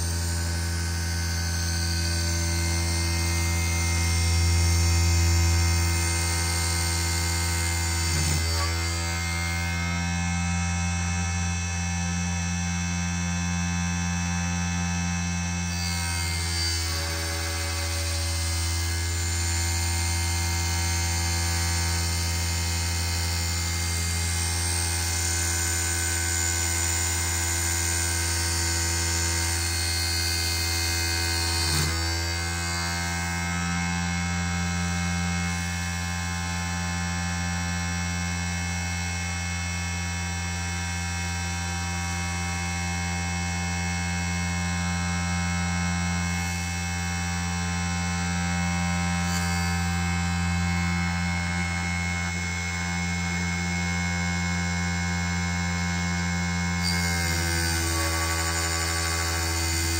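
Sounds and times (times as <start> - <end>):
electric motor hum: 0.0 - 59.9.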